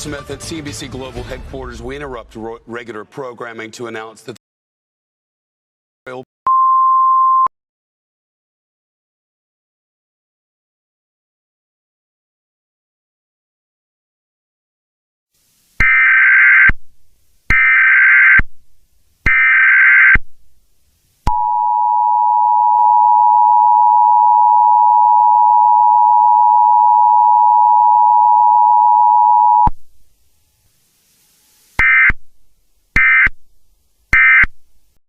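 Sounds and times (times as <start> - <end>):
digital header tone bursts: 15.8 - 16.8, 17.5 - 18.4, 19.3 - 20.2, 31.8 - 32.2, 33.0 - 33.3
two-tone attention signal: 21.3 - 29.7.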